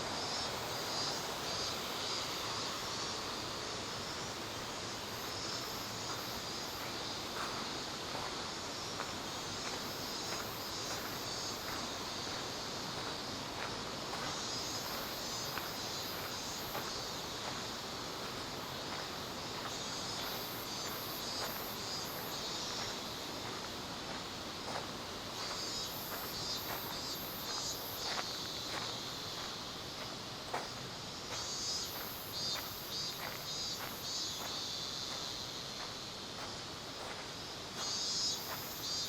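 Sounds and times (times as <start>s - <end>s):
cicadas buzzing: 0.0s - 39.0s
steady background hiss: 0.0s - 39.0s
faint footsteps: 5.5s - 39.0s.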